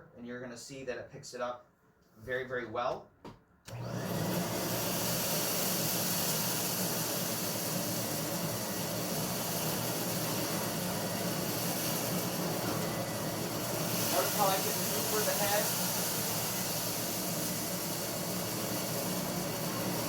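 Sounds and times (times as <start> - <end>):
vacuum switching on: 3.7 - 20.0
vacuum suction hiss and hum: 10.7 - 20.0.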